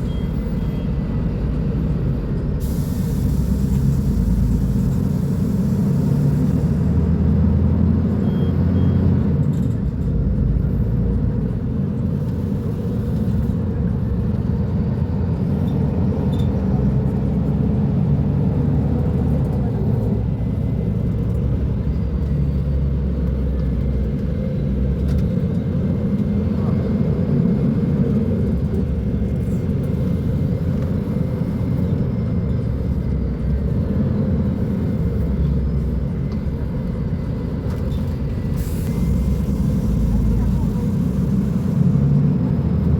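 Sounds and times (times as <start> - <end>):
bus diesel engine rumbling: 0.0 - 42.9.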